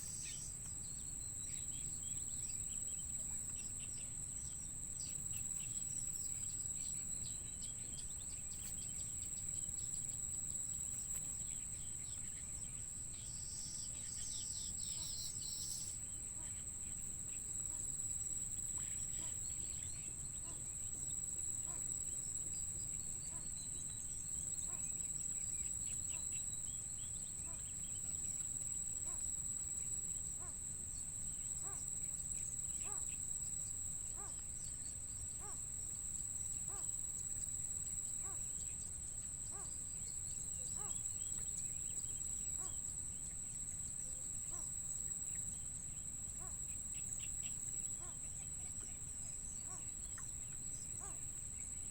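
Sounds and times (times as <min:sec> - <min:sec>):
insects trilling: 0:00.0 - 0:51.9.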